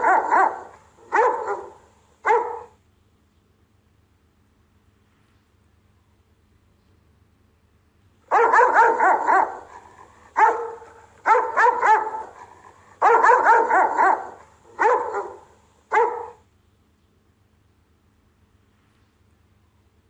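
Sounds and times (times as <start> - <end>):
dog barking: 0.0 - 2.8, 8.3 - 16.4.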